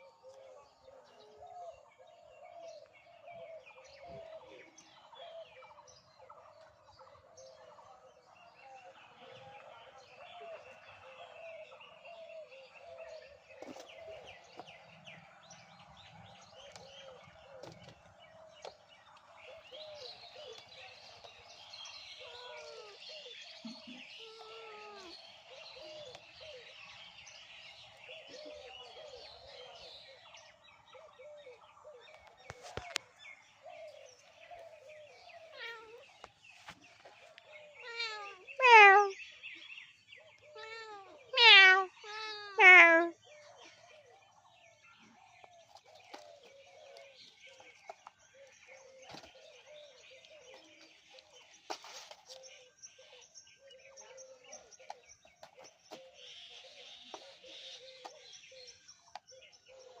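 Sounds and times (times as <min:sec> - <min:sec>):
faint bird chirping: 0:00.0 - 1:00.0
cat meowing: 0:22.2 - 0:23.0, 0:24.2 - 0:25.2, 0:35.5 - 0:36.0, 0:37.8 - 0:39.2, 0:40.6 - 0:43.2.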